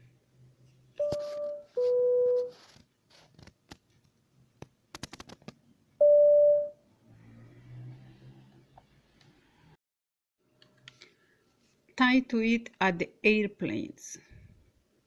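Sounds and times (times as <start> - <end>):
electronic chime tone: 6.0 - 6.7.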